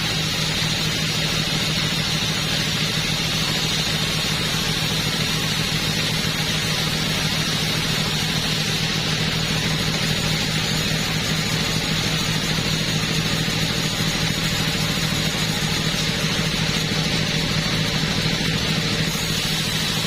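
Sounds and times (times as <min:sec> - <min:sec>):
chainsaw engine running: 0:00.0 - 0:20.0.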